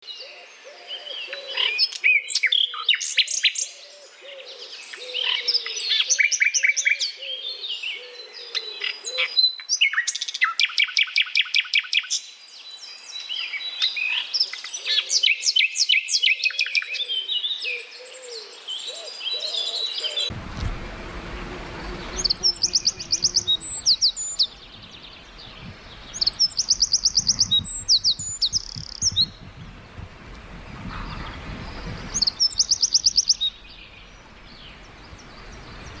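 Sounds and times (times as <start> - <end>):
birds chirping and trilling: 0.0 - 36.0
low bird call: 16.5 - 36.0.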